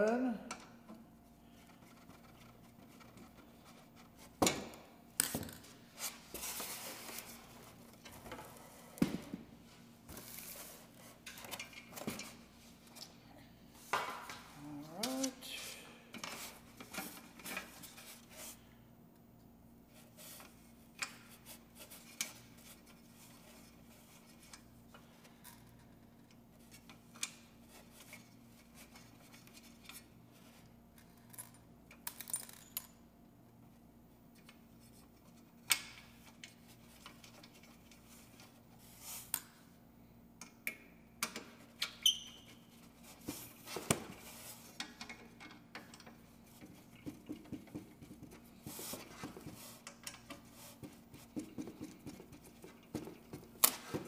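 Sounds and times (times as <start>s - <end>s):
clinks of metal parts and screws: 31.5s - 33.0s.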